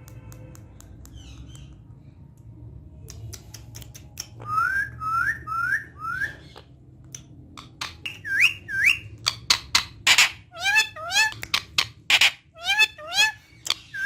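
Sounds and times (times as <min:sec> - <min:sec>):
parrot whistling: 0:04.4 - 0:06.4, 0:08.0 - 0:09.3.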